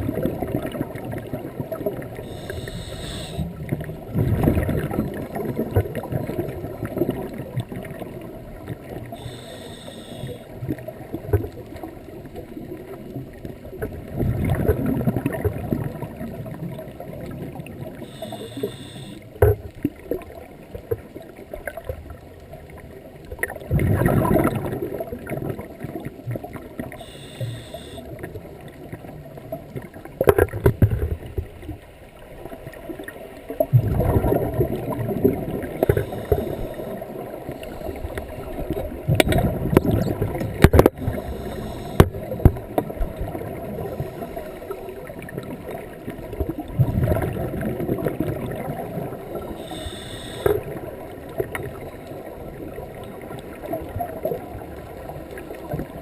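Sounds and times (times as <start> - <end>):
gurgling exhaled bubbles: 0.0 - 19.2, 19.8 - 31.4, 32.8 - 56.0
regulator inhale hiss: 2.2 - 3.6, 9.1 - 10.5, 18.0 - 19.3, 26.9 - 28.1, 35.8 - 38.6, 41.0 - 42.4, 43.8 - 44.8, 49.6 - 50.8.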